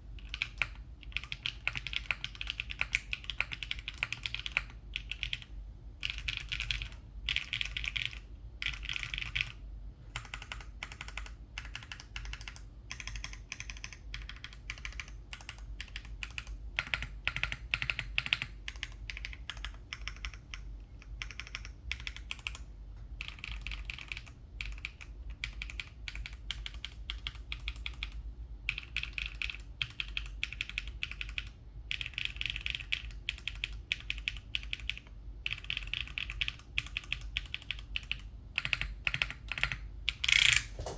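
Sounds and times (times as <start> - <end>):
mechanical keyboard typing: 0.2 - 40.9.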